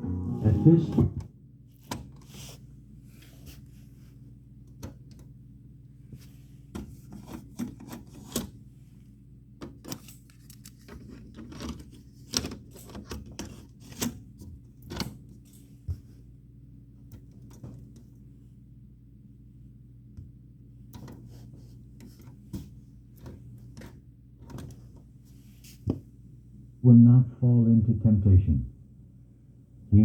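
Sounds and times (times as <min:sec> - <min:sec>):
steady low hum: 0:00.0 - 0:10.8, 0:14.2 - 0:30.0.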